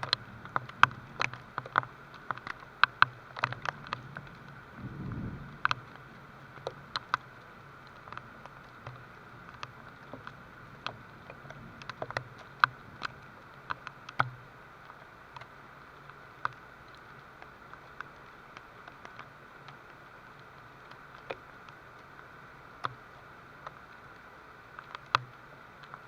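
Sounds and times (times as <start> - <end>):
rain hiss: 0.0 - 26.0
raindrops tapping on hard surface: 0.0 - 26.0.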